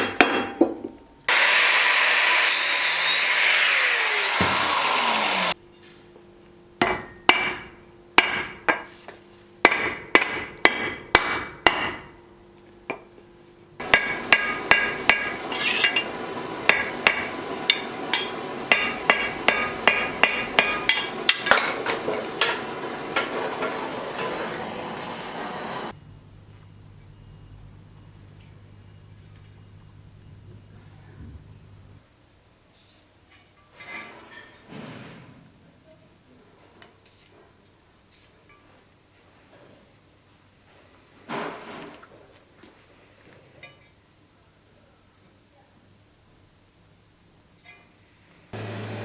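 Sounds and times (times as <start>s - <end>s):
power tool: 1.3s - 5.6s, 13.8s - 26.0s, 48.6s - 49.0s
hammer tapping on metal: 6.8s - 8.9s, 9.6s - 12.1s, 13.8s - 16.1s, 16.7s - 23.3s.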